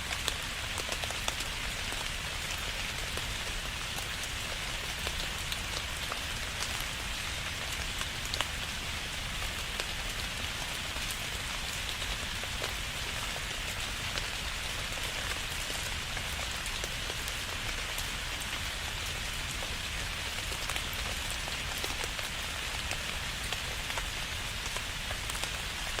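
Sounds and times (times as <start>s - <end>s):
steady rain pattering: 0.0s - 26.0s.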